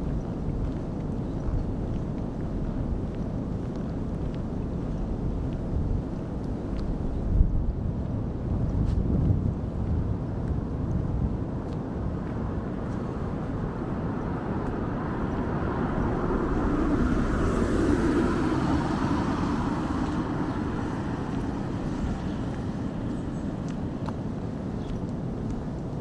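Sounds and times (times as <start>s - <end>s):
street ambience: 0.0s - 26.0s
motor vehicle passing by: 12.8s - 24.1s.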